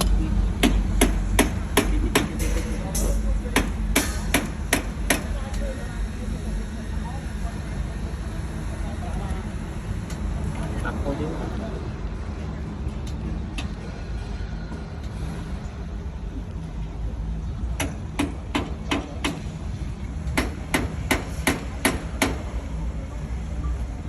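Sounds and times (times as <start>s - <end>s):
low engine rumble: 0.0s - 24.0s
hammer striking metal: 0.6s - 5.3s, 17.8s - 19.5s, 20.3s - 22.5s.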